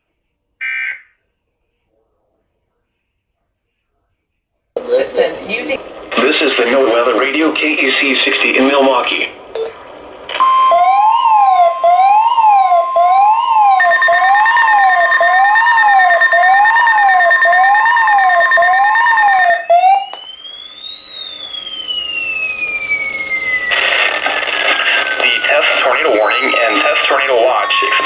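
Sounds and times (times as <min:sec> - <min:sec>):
weather radio alarm tones: 0:04.8 - 0:28.0
slower siren tone: 0:10.3 - 0:28.0.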